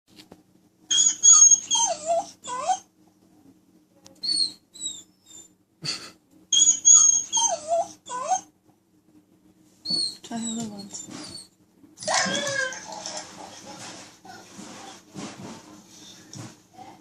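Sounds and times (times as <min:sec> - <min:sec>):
dog whines from phone speaker: 0:00.9 - 0:02.8, 0:06.6 - 0:08.5, 0:11.3 - 0:13.0.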